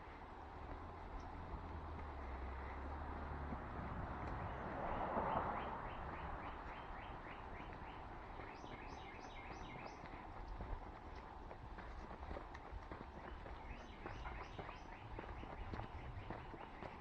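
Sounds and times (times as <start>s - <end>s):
bird singing down-slurred notes: 5.6s - 10.0s.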